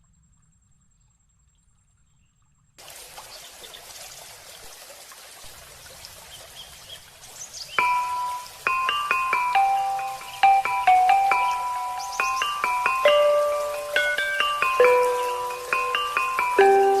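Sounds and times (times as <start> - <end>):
water trickling and splashing: 0.0 - 17.0
bell-like chimes: 7.8 - 17.0.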